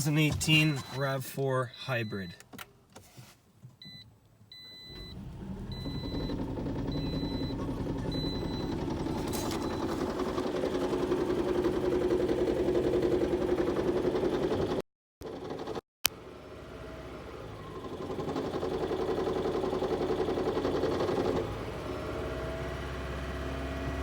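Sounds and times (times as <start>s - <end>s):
short electronic beeps: 0.0s - 2.4s
car engine knocking rattle: 5.8s - 15.8s, 17.8s - 21.4s.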